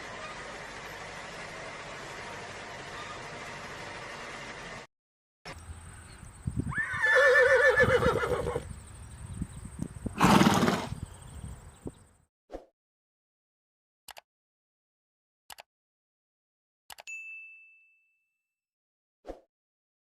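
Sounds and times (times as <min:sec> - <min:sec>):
horse whinnying: 0:06.7 - 0:08.7, 0:10.2 - 0:11.0.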